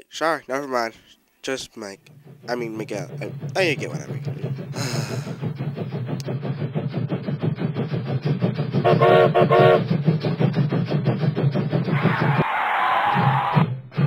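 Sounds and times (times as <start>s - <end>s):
model train running on track: 1.5s - 11.9s
train horn toots: 8.8s - 9.9s.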